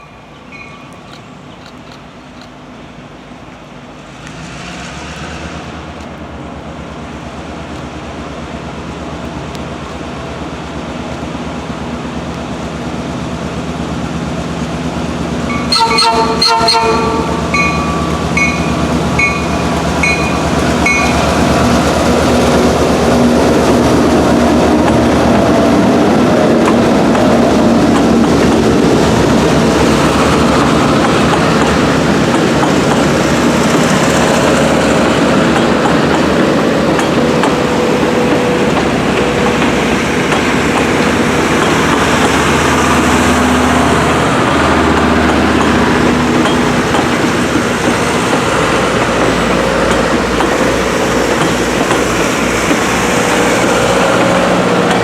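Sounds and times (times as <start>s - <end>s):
steam locomotive rumbling: 0.0s - 55.0s
steam whistle blast: 15.5s - 19.4s.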